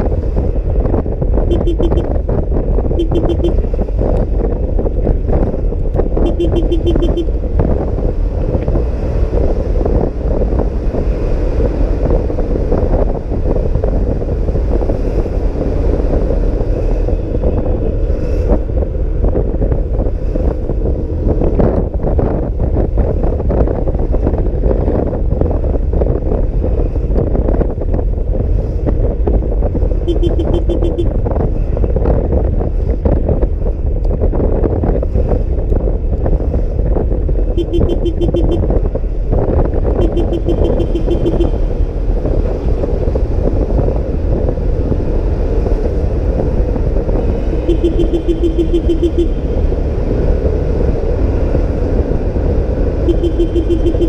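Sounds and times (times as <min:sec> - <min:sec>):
scooter engine hum: 0:00.0 - 0:18.0, 0:29.8 - 0:31.8, 0:37.3 - 0:54.0
wind rushing over microphone: 0:00.0 - 0:54.0
fast-pulsing beep: 0:30.1 - 0:31.1, 0:47.7 - 0:49.3, 0:53.1 - 0:54.0.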